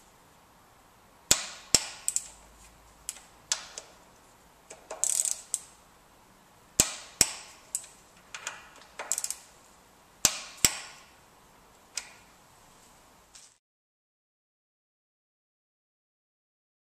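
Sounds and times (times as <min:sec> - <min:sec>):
torque wrench clicking: 0:01.3 - 0:02.4, 0:04.7 - 0:05.7, 0:06.8 - 0:09.5.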